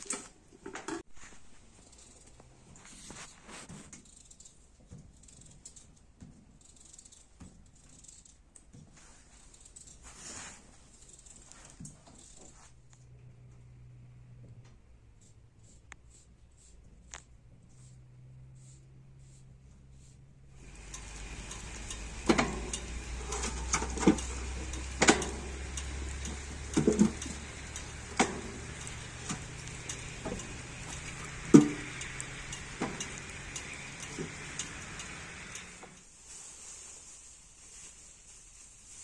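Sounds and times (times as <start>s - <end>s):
cutlets sizzling in a pan: 20.6s - 36.0s
utensil knocking against pan: 20.7s - 35.2s.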